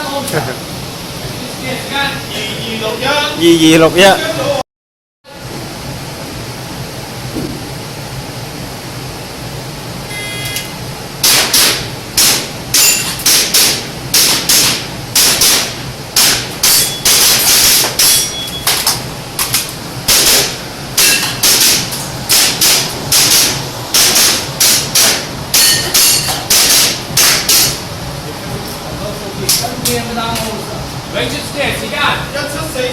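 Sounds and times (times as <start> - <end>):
short high ringing tone: 10.1 - 10.7, 12.8 - 13.1, 18.1 - 18.7
airsoft pistol shots: 11.2 - 18.3, 20.1 - 27.8
electronic timer beep: 18.2 - 18.7.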